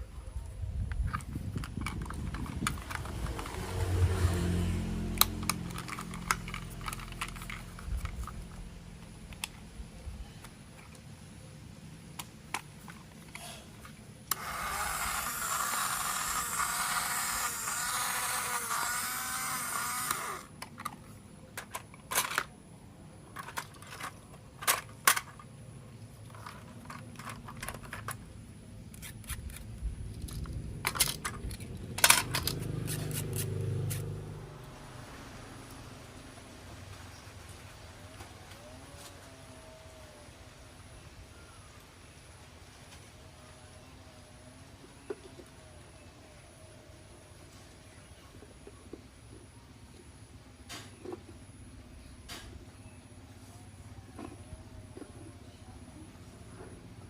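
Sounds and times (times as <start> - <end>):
plastic toy parts clicking: 0.9 - 3.7, 5.2 - 8.6, 14.3 - 22.6, 23.3 - 25.5, 26.3 - 28.2, 28.9 - 34.0.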